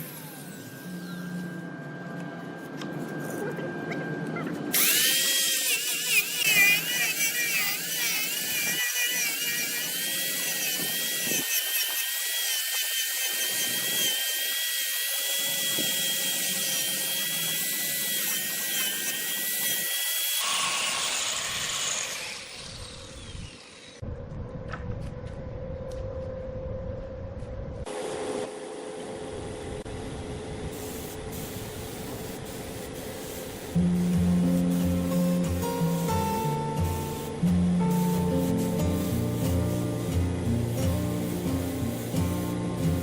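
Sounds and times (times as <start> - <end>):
power tool whining: 0.0 - 24.0
hiss: 30.7 - 35.5.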